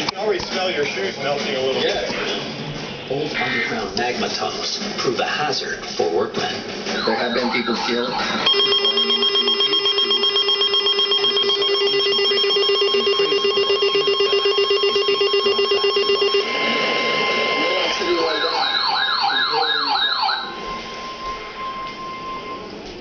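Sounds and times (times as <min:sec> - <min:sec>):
steady electronic tone: 0:06.9 - 0:22.8
siren yelping: 0:07.0 - 0:22.7
electric bell ringing tone: 0:08.5 - 0:18.6, 0:20.5 - 0:22.7.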